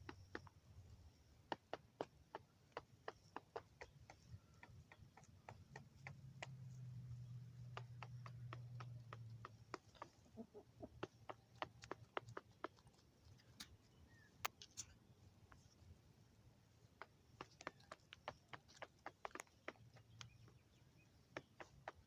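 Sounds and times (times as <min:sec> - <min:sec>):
chickens pecking feed: 0:01.4 - 0:14.4, 0:16.6 - 0:22.0.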